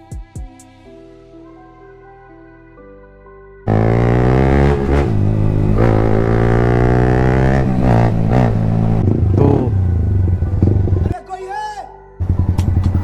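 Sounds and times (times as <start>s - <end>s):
loud motorcycle engine: 3.7s - 11.1s, 12.2s - 13.0s.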